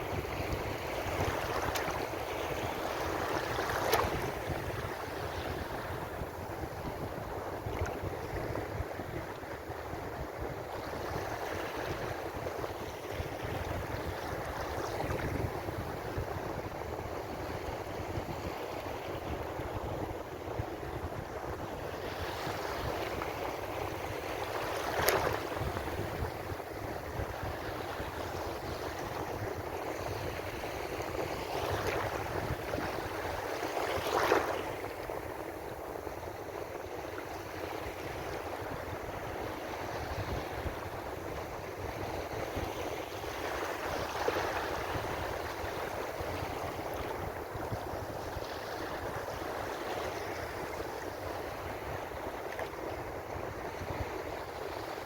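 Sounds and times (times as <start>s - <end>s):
waves breaking: 0.0s - 9.7s, 22.0s - 36.3s
steady wash of water: 0.0s - 17.2s, 21.3s - 36.3s.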